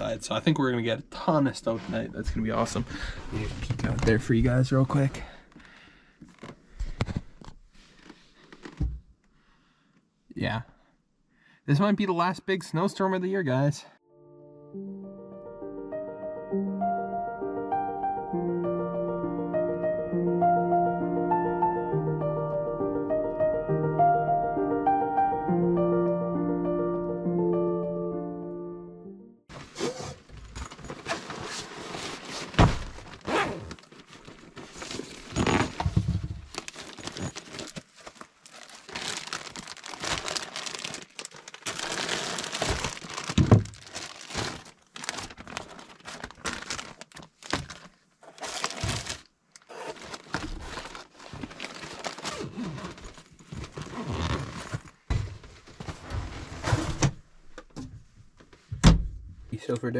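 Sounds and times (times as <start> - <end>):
plastic packaging crinkling and tearing: 30.7 - 55.1
objects knocking and thunking: 35.4 - 36.5.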